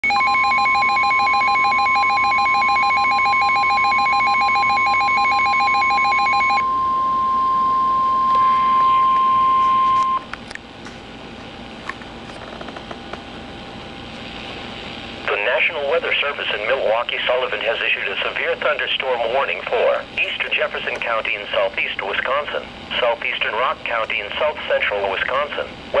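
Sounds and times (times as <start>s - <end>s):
steady high alarm beep: 0.0s - 10.3s.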